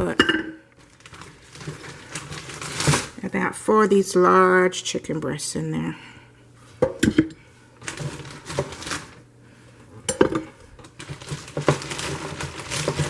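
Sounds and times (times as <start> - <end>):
frozen meat clunking in crock: 10.1 - 13.0.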